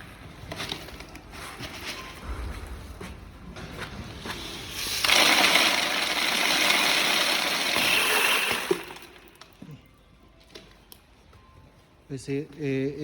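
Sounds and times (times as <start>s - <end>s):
coffee beans pouring through chute: 4.8s - 9.3s.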